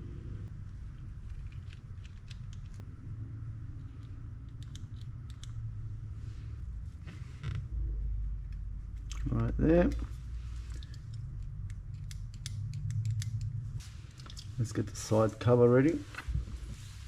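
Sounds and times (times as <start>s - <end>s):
low background rumble: 0.0s - 17.0s
small metal parts clicking: 1.2s - 2.8s, 3.8s - 5.6s, 10.7s - 13.6s.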